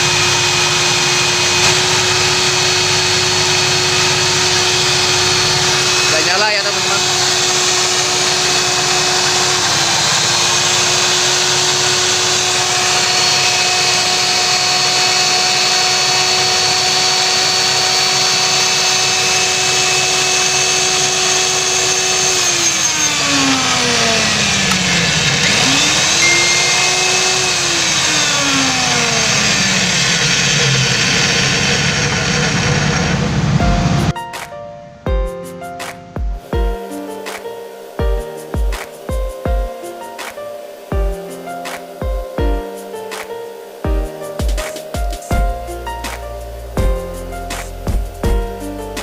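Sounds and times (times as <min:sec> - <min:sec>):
circular saw motor running: 0:00.0 - 0:34.2.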